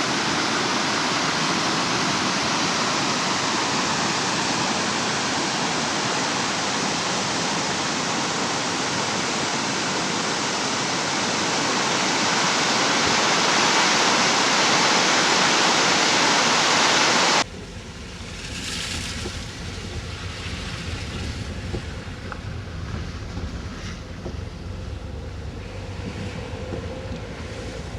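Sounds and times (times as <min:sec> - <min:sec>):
water rushing down ravine: 0:00.0 - 0:27.9
wind rumbling on microphone: 0:17.4 - 0:27.9.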